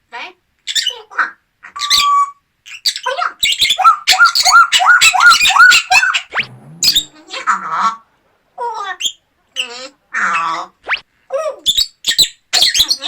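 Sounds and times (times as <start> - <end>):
parrot calls: 1.6 - 11.0
parrot rising whistle: 4.3 - 8.0.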